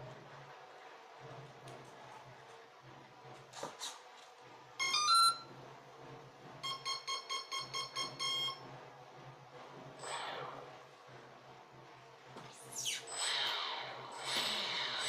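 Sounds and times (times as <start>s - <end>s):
short even beeps: 6.6s - 8.6s.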